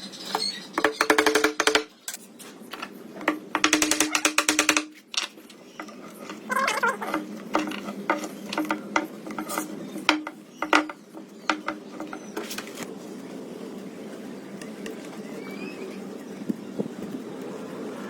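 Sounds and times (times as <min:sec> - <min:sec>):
clicks taps and scrapes on wood: 0:00.8 - 0:12.9.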